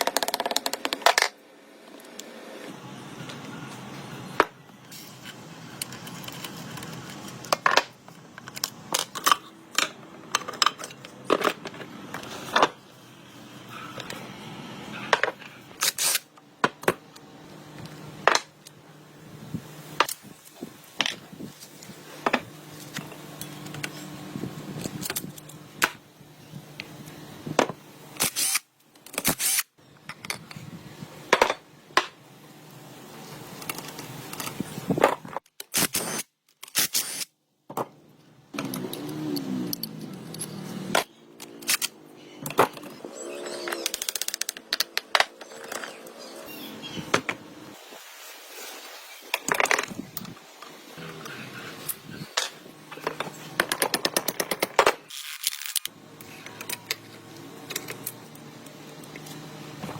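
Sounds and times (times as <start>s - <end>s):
hand tools tapping metal parts: 52.4s - 55.8s.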